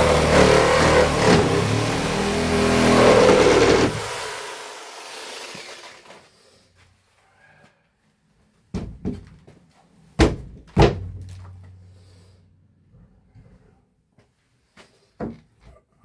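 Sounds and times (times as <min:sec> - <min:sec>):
hard knocks on wood framing: 0:00.0 - 0:04.2, 0:08.7 - 0:09.3, 0:10.2 - 0:11.3.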